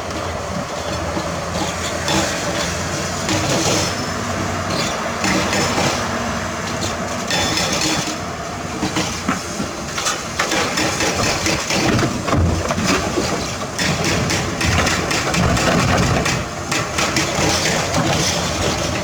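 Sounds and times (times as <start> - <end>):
excavator diesel engine: 0.0 - 19.0
clanking and rattling of dirt and rock: 8.8 - 19.0.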